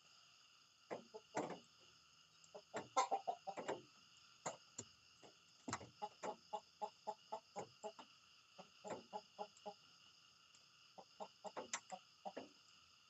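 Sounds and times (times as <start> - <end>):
chickens clucking: 2.5 - 4.7, 5.7 - 9.8, 11.0 - 12.5.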